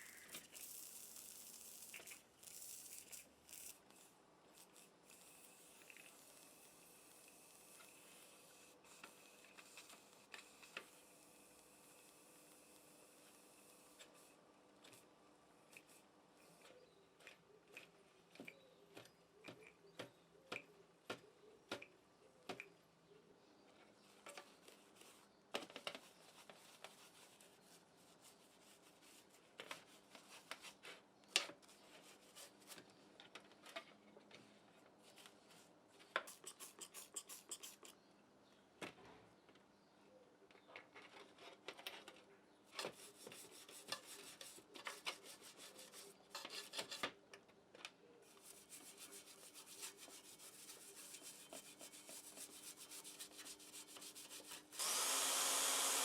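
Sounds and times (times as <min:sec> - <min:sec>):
hand rubbing and scraping: 0:42.7 - 0:47.1, 0:48.2 - 0:54.8.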